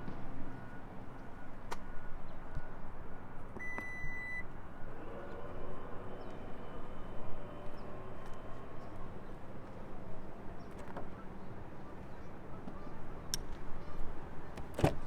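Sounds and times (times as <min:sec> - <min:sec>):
outdoor background rumble: 0:13.1 - 0:15.0.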